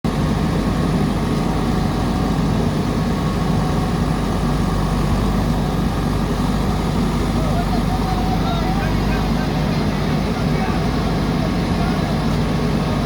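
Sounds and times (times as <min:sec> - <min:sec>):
diesel engine running: 0:00.0 - 0:13.0.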